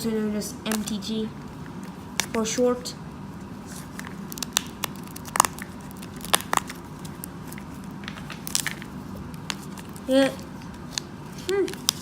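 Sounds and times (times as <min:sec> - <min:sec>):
trading cards and packaging handled: 0:03.4 - 0:12.0.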